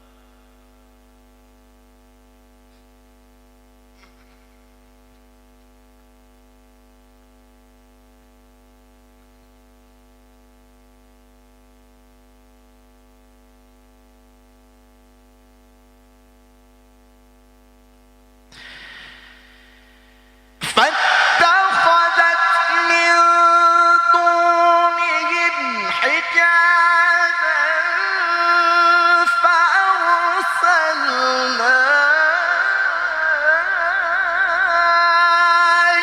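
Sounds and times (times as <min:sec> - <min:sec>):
mains hum: 0:00.0 - 0:36.0.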